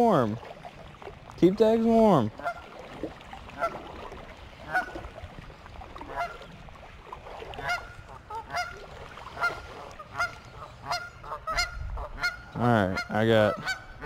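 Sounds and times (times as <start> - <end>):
geese honking: 2.4 - 2.7, 3.6 - 3.9, 4.6 - 5.0, 6.0 - 6.5, 7.6 - 14.0.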